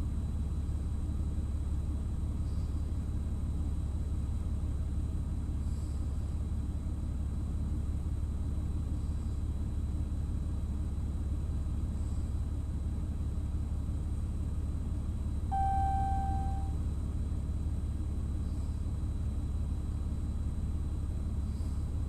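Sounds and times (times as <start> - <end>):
held clear tone: 15.5 - 16.8.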